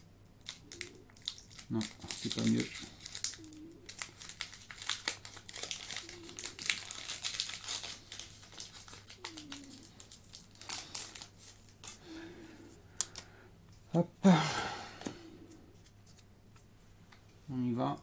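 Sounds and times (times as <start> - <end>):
foil wrapper crinkling: 0.4 - 12.2.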